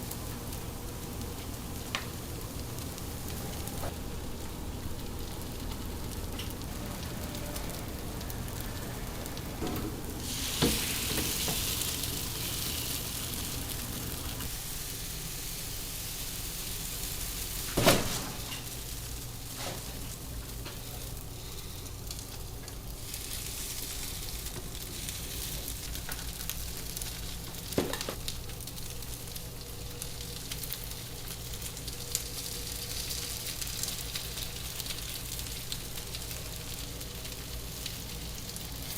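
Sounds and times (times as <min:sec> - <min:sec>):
batter sizzling in moulds: 0:00.0 - 0:38.9
steady low hum: 0:00.0 - 0:38.9.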